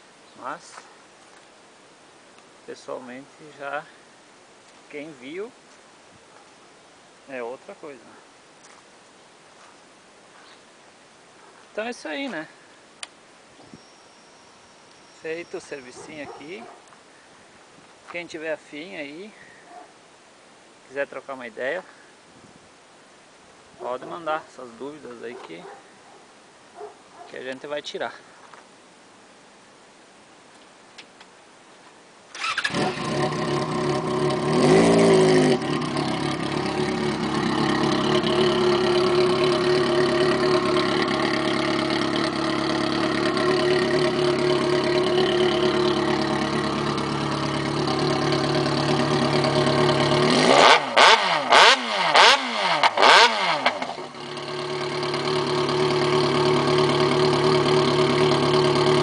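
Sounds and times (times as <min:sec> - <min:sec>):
motorcycle engine starting: 0:32.3 - 0:59.0
motorcycle engine idling: 0:32.4 - 0:59.0
motorcycle engine revving: 0:32.4 - 0:59.0.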